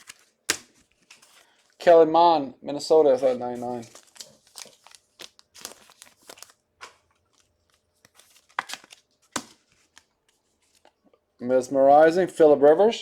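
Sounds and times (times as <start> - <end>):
cards being shuffled: 0.0 - 1.6, 3.2 - 11.0.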